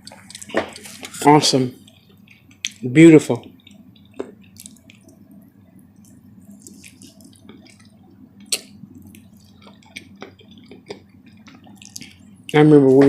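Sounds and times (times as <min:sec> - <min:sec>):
close-miked chewing: 0:00.0 - 0:12.6
wet lip-smacking: 0:03.6 - 0:12.6
mouth clicks: 0:06.0 - 0:12.3.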